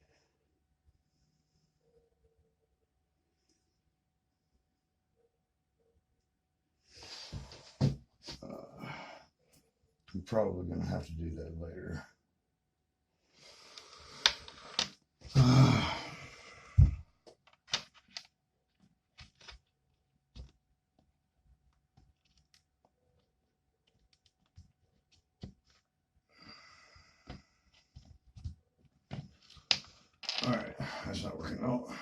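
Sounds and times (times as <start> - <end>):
heavy exhaled sigh: 15.3 - 17.0
small objects clicking and tapping: 17.2 - 19.7, 27.7 - 30.5.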